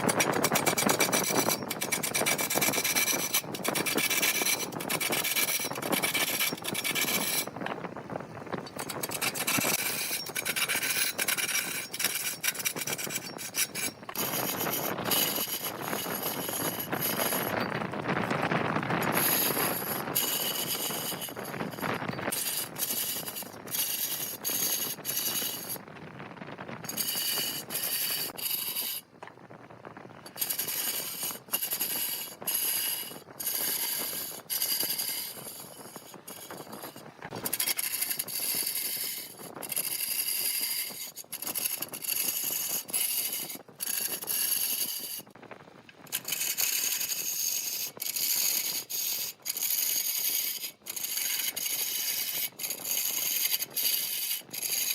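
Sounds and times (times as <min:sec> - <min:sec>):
lathe tool cutting wood: 0:19.0 - 0:25.7.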